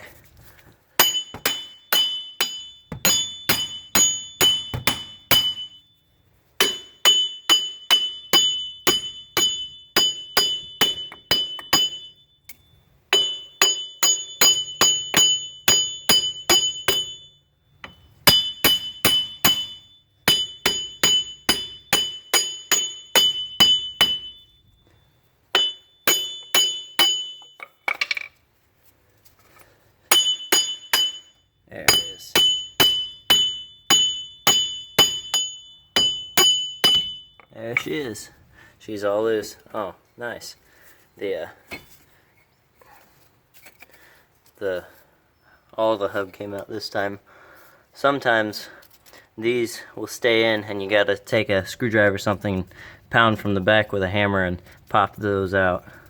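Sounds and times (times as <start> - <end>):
ringing metal clink: 1.0 - 28.4, 29.6 - 38.4.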